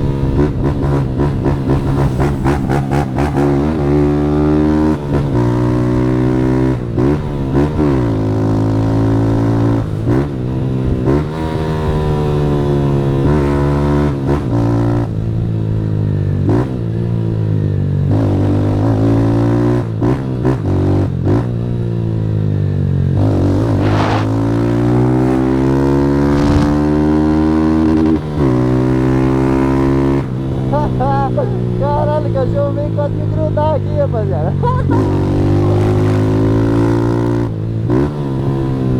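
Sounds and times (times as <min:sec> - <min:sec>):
motorcycle engine accelerating: 0:21.2 - 0:38.9.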